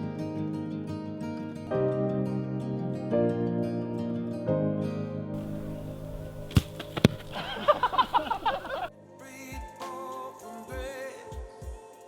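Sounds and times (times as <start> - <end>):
plucked string music: 5.4 - 8.9.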